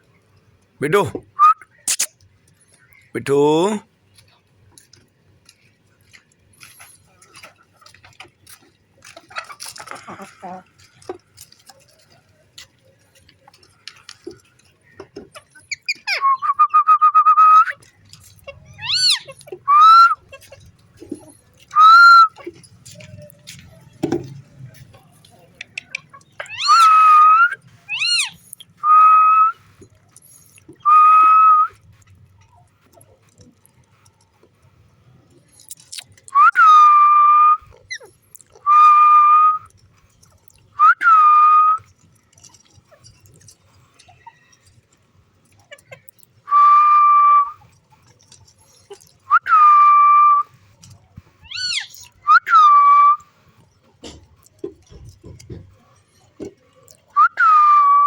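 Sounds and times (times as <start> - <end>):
parrot whistling: 1.4 - 2.1, 18.7 - 20.2, 26.5 - 29.5, 51.5 - 53.2.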